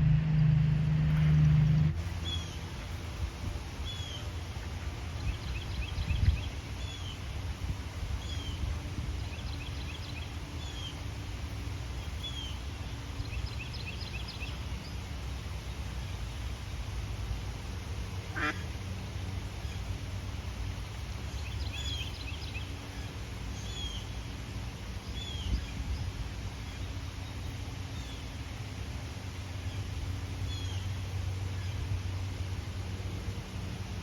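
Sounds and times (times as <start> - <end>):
low background rumble: 0.0 - 34.0
ducks quacking: 18.3 - 18.7.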